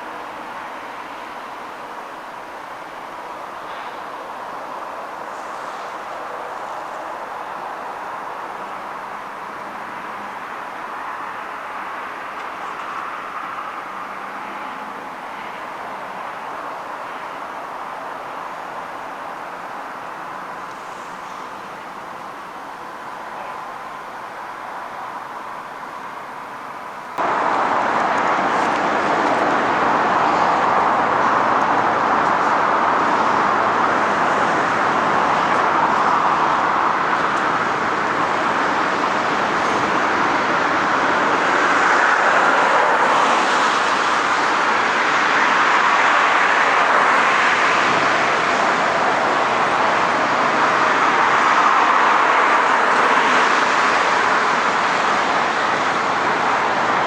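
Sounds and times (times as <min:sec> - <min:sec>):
road traffic passing: 0:00.0 - 0:57.0.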